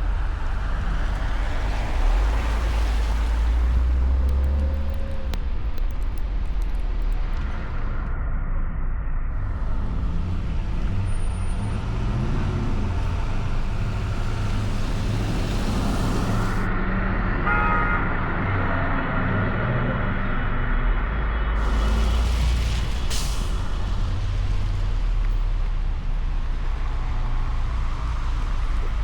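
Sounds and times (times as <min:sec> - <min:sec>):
car engine hum: 0:00.0 - 0:08.1, 0:09.3 - 0:16.7
tyre and road noise: 0:00.0 - 0:17.4, 0:21.5 - 0:29.0.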